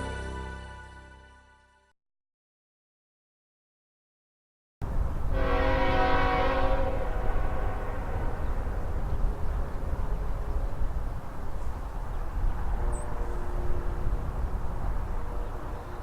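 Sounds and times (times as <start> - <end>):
train rumbling: 4.8 - 16.0
locomotive horn chord: 5.3 - 8.9.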